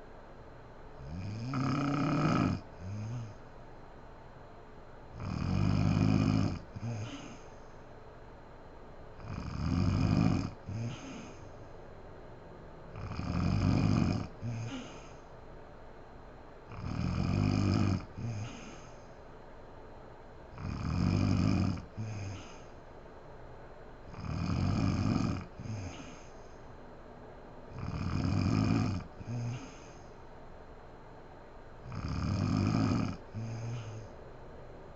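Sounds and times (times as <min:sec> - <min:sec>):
woman snoring: 0:01.0 - 0:03.4, 0:05.2 - 0:07.6, 0:09.2 - 0:11.5, 0:12.9 - 0:15.2, 0:16.7 - 0:19.1, 0:20.6 - 0:22.8, 0:24.1 - 0:26.4, 0:27.7 - 0:30.1, 0:31.8 - 0:34.1.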